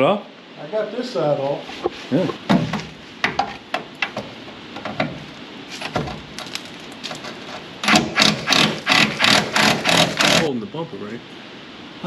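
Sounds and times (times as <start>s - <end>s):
quick mechanical clacks: 7.8s - 10.5s.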